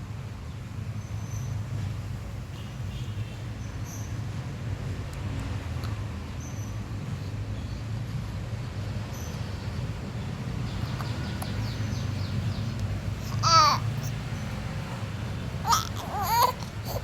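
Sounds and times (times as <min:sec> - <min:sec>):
child squealing: 0:13.2 - 0:14.1, 0:15.6 - 0:17.0.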